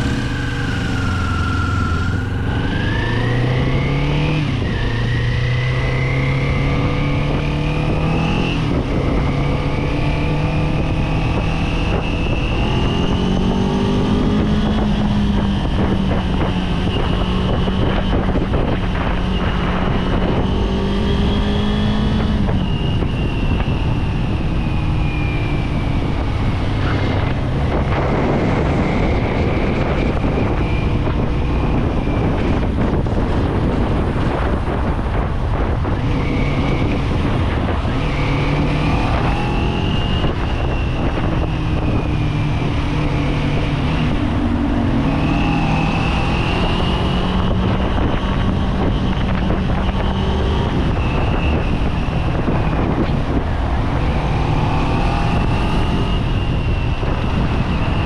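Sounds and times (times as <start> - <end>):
motorcycle engine revving: 0.0 - 58.0
wind on microphone: 0.0 - 58.0.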